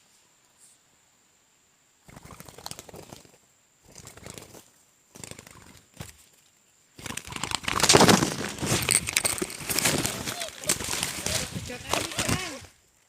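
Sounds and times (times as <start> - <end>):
rustling and crackling: 4.0 - 13.0.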